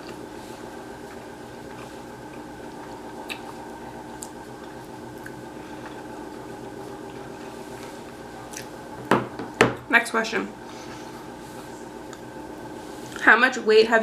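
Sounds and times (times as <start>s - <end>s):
person chewing: 0.0s - 8.9s, 12.0s - 12.3s
electrical hum: 0.0s - 14.0s.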